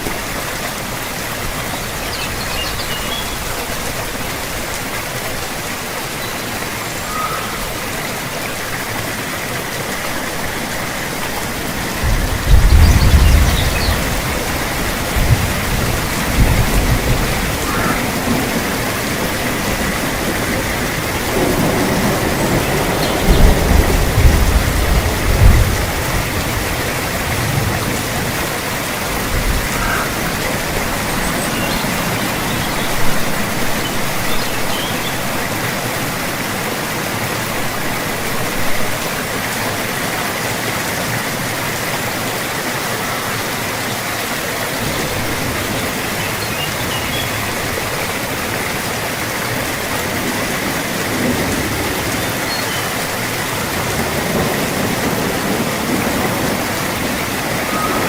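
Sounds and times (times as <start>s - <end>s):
steady rain falling: 0.0s - 58.0s
low rolls of thunder: 11.9s - 33.8s, 53.7s - 58.0s.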